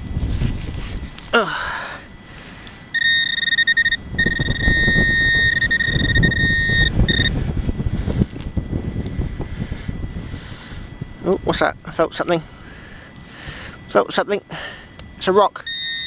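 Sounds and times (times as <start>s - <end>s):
soil scraping and rustling: 0.0s - 1.4s
high electronic tone: 2.9s - 7.4s, 15.3s - 16.0s.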